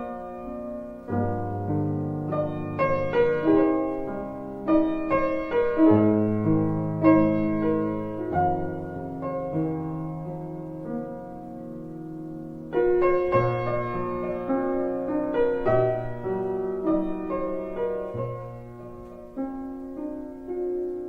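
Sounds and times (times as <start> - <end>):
slow gentle piano music: 0.0 - 21.0.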